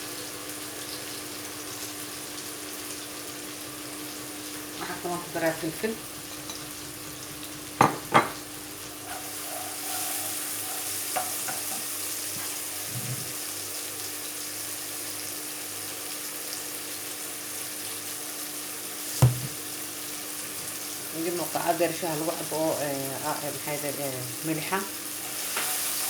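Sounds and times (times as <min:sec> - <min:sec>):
food sizzling in oil: 0:00.0 - 0:26.0
sharp knocks: 0:19.2 - 0:19.6.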